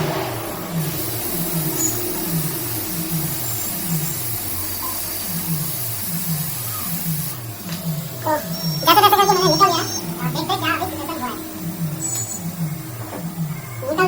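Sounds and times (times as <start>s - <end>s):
hot-air gun blowing: 0.0s - 7.8s.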